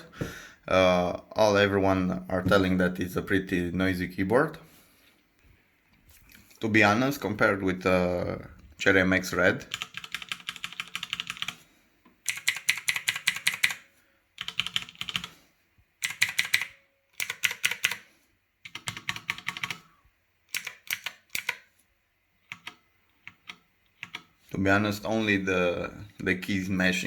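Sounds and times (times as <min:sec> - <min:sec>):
typing on clicky mechanical keyboard: 0:09.6 - 0:11.6, 0:12.2 - 0:15.4, 0:16.0 - 0:19.9, 0:20.5 - 0:21.7, 0:22.4 - 0:24.4.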